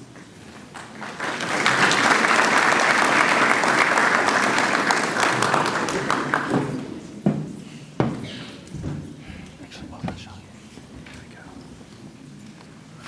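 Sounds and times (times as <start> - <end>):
audience clapping: 0.1 - 7.1
knocks: 6.5 - 11.5.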